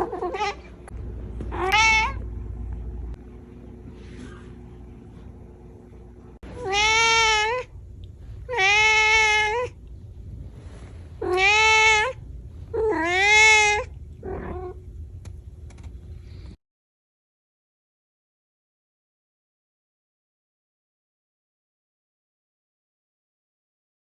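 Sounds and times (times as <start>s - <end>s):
cat meowing: 0.0s - 0.7s, 1.5s - 2.2s, 6.5s - 7.8s, 8.5s - 9.8s, 11.2s - 14.8s.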